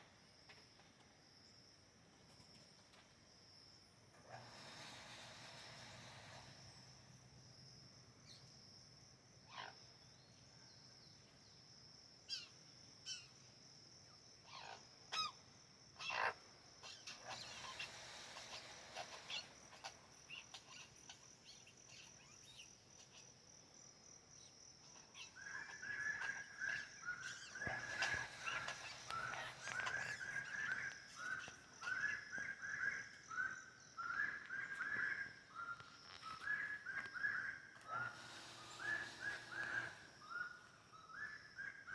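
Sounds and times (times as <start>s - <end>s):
forest birds calling: 4.3s - 7.5s, 12.3s - 13.6s, 14.5s - 41.9s
steady high-pitched drone: 37.8s - 40.3s.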